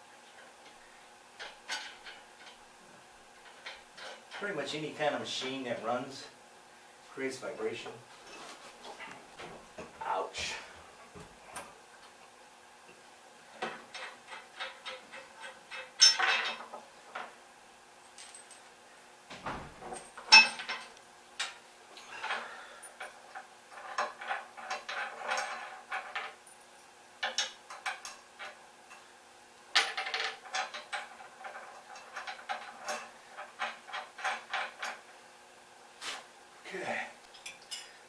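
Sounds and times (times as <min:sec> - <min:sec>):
metal hardware clinking: 0:13.9 - 0:16.7, 0:19.8 - 0:21.6.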